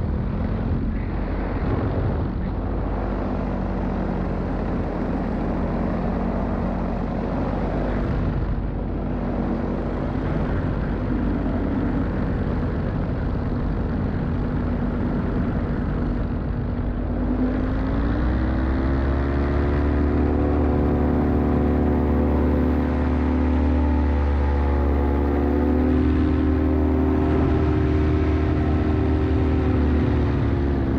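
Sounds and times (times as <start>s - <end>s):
wind rush: 0.0s - 4.0s
propeller engine running: 0.0s - 30.9s.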